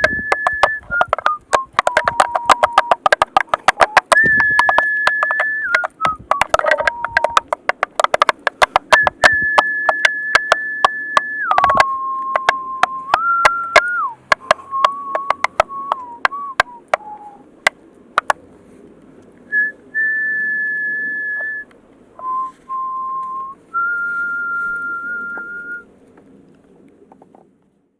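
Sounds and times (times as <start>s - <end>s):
person whistling a slow tune: 0.0s - 3.0s, 3.6s - 7.5s, 8.7s - 17.4s, 19.5s - 25.9s
tap shoes clicking: 0.0s - 18.4s.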